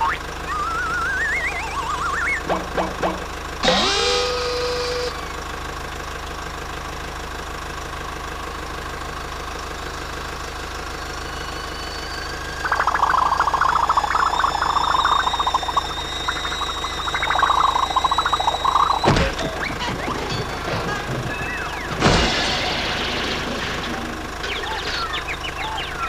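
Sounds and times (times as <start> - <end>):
cartoon car engine running: 0.0 - 26.0
choppy fight clatter: 18.0 - 25.9
sharp crash: 21.9 - 24.3.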